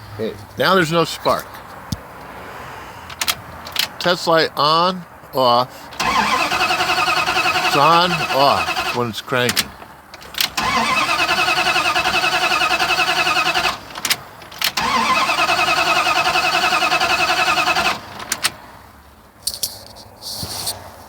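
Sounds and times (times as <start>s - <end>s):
truck engine cranking: 3.0s - 4.1s, 5.8s - 18.8s.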